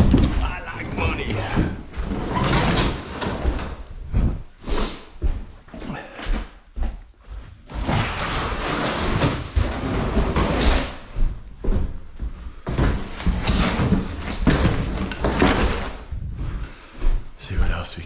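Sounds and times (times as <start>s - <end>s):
debris scraping and rustling: 0.0s - 3.9s, 7.7s - 11.0s, 12.7s - 16.3s.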